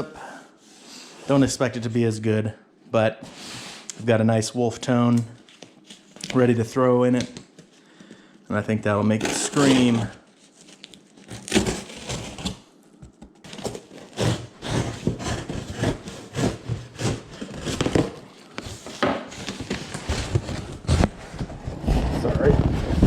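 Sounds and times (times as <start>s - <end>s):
cardboard box being torn open: 9.1s - 12.6s, 13.4s - 18.2s.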